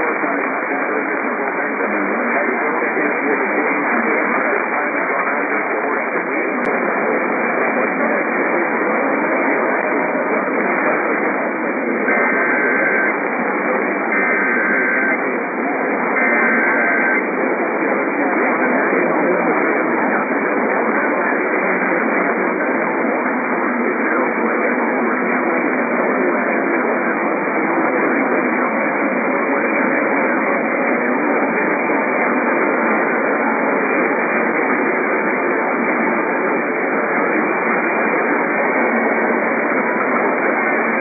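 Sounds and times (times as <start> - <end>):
radio static hiss: 0.0 - 41.0.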